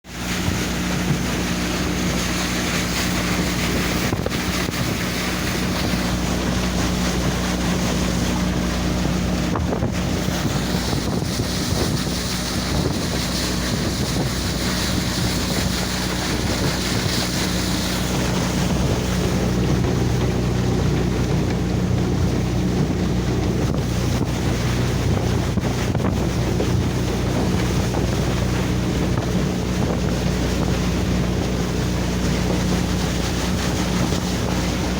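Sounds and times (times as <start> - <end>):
boat engine running: 0.0 - 34.9
water rushing past hull: 0.0 - 34.9
wind buffeting microphone: 0.1 - 34.9.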